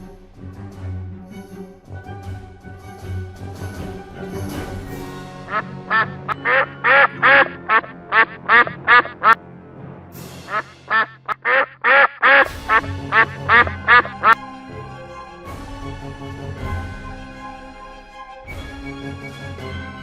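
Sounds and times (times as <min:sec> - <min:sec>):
background music: 0:00.0 - 0:20.0
animal calling: 0:05.4 - 0:09.4, 0:10.5 - 0:14.9.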